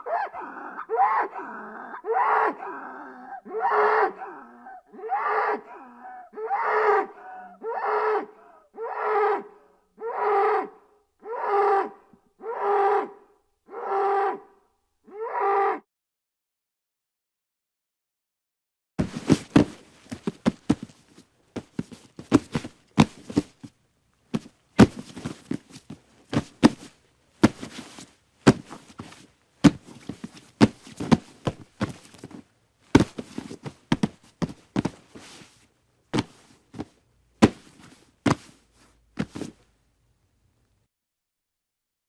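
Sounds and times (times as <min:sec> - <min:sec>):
hooves on hard ground: 0:19.0 - 0:23.7, 0:24.3 - 0:35.6.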